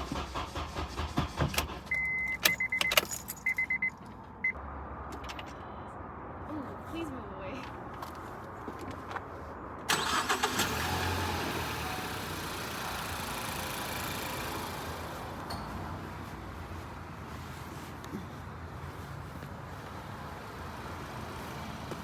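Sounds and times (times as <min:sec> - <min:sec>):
car engine cranking and starting: 0:00.0 - 0:03.6, 0:09.9 - 0:15.6.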